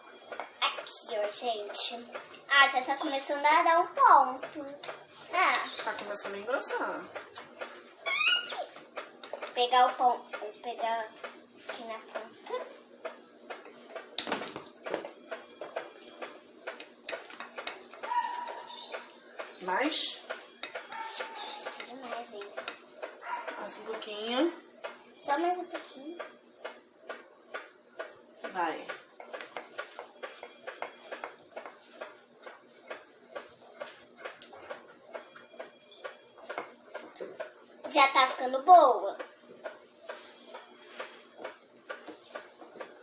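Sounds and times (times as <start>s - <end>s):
spoon stirring sticky slime: 20.4s - 24.1s.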